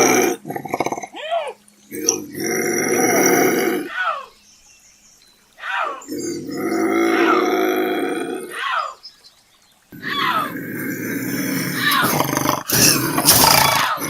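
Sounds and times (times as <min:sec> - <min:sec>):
bobcat screaming: 0:00.0 - 0:04.3, 0:05.6 - 0:09.0, 0:10.0 - 0:14.0.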